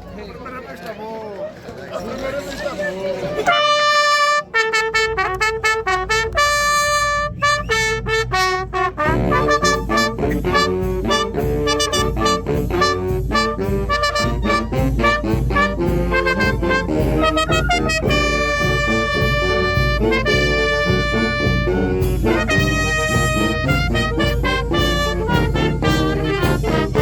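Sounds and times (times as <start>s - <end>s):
brass band playing: 3.3s - 27.0s
drums: 6.4s - 27.0s.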